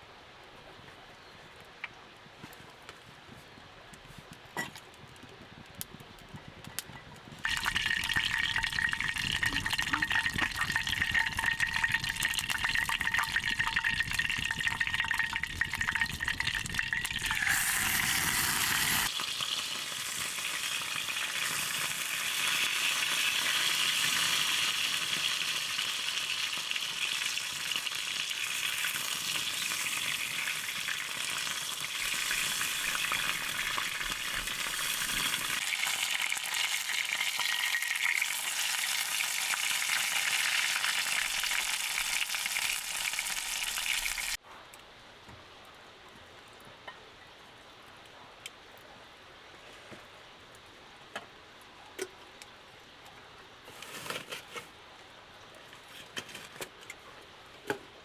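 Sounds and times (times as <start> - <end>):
food sizzling in a pan: 7.4 - 44.4.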